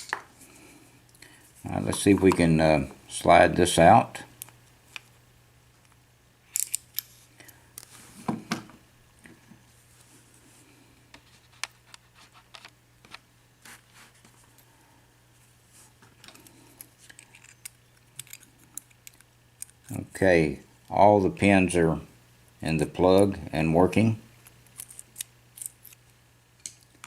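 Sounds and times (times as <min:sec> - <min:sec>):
small metallic clicks and scrapes: 0:06.5 - 0:07.9, 0:16.2 - 0:20.0, 0:24.4 - 0:27.0.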